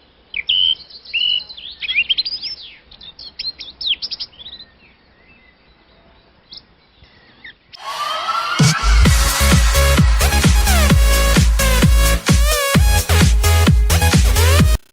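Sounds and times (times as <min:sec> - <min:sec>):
loud electronic music: 0:07.8 - 0:14.9.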